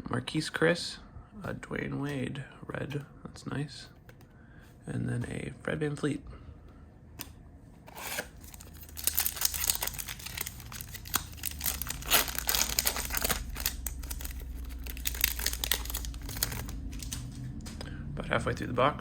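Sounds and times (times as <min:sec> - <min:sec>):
card pack wrapper crinkling and tearing: 0:07.9 - 0:17.4.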